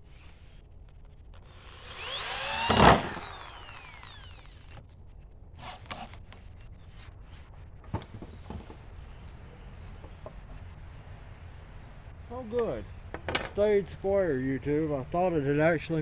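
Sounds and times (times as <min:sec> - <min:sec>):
power drill driving screw: 0:00.1 - 0:04.9, 0:05.6 - 0:06.6.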